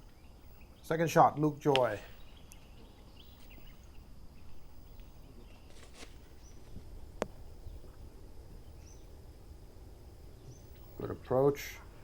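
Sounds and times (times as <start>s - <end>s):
high insect drone: 0.0s - 12.0s
bird chirps: 2.0s - 6.8s, 8.6s - 9.2s.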